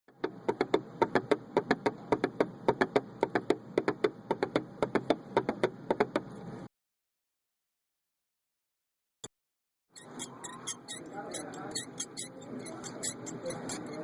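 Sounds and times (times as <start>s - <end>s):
rapid sharp taps: 0.1s - 6.3s.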